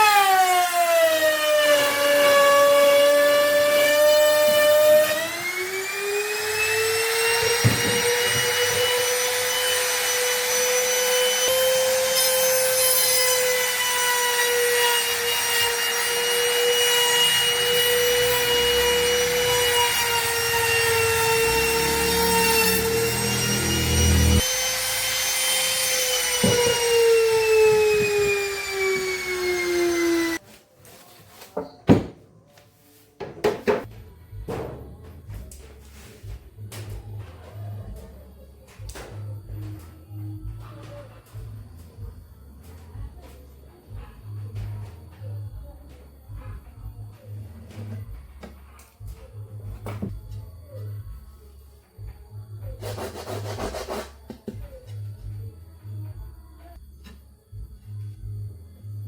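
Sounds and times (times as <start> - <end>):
power tool cutting wood: 0.0 - 30.4.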